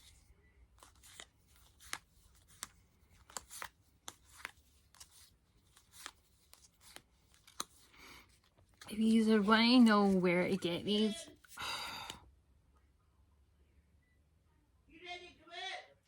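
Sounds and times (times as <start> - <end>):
cards flicking against cards: 0.8 - 12.2.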